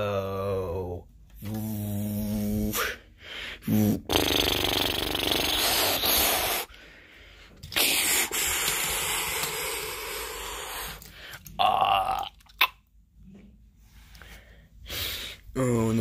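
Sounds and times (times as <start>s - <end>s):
hissing blowing mouth noises: 1.4s - 6.8s, 7.7s - 11.2s
swooping mouth tone: 3.6s - 6.7s.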